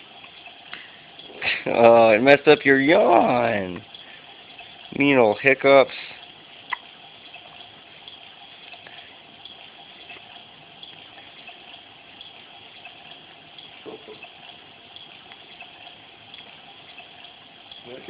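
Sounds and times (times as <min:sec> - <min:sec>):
steady rushing hiss: 0:00.0 - 0:18.0
faint ticks: 0:00.1 - 0:01.3, 0:06.1 - 0:18.0.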